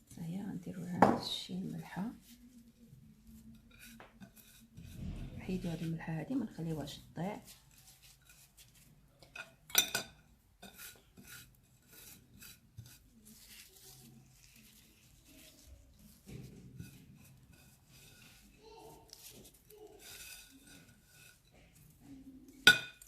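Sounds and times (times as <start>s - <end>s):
hands rubbing coarse salt: 3.4s - 5.0s, 7.4s - 9.0s, 10.6s - 22.0s.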